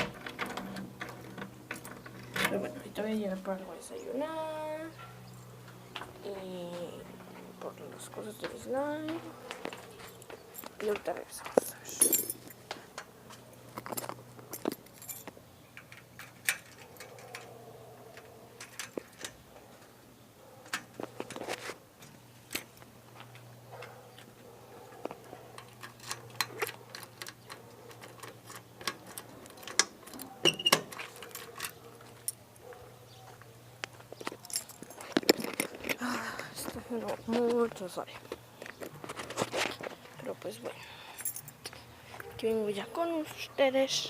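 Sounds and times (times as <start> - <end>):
keys jangling: 8.8 - 12.7, 13.6 - 19.3, 23.8 - 32.8, 34.2 - 36.0, 41.0 - 42.2.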